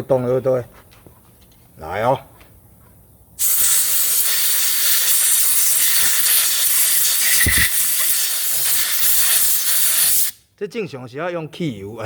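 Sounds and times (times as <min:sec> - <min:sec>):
aerosol spray hissing: 0:03.4 - 0:10.4.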